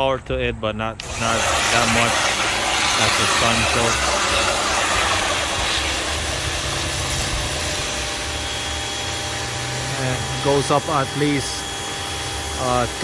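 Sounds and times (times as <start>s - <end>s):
high-pressure water jet hissing: 1.0s - 13.0s
pressure washer motor humming: 1.0s - 13.0s.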